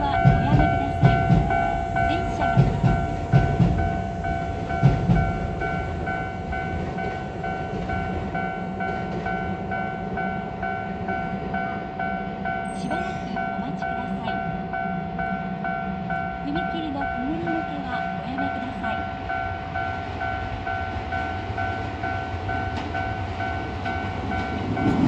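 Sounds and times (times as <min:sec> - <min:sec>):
level crossing alarm ringing: 0:00.0 - 0:25.0
train wheels thumping over rail joints: 0:00.2 - 0:09.6.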